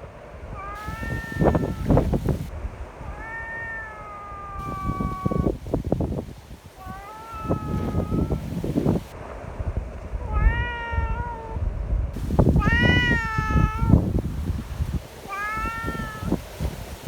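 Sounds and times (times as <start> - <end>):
wind buffeting microphone: 0.0 - 17.0
cat meowing: 0.5 - 5.6, 6.7 - 9.0, 10.2 - 11.6, 12.3 - 14.2, 15.2 - 16.5.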